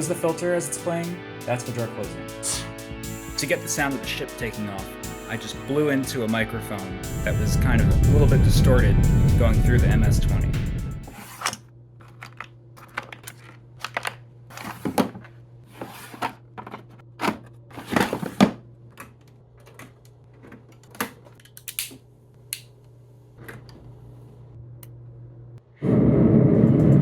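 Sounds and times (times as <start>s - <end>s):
low electrical hum: 11.6s - 27.0s.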